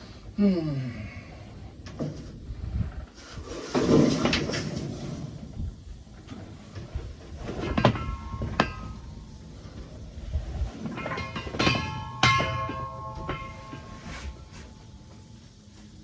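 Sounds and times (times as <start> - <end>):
metal scraping and shuffling: 1.9 - 16.0
sharp metallic clanks: 7.5 - 15.3.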